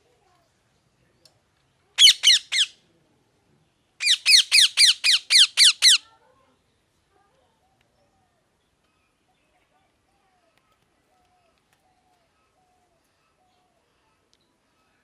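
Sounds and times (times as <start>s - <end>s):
parrot calling harsh notes: 2.0s - 2.7s, 4.0s - 6.0s.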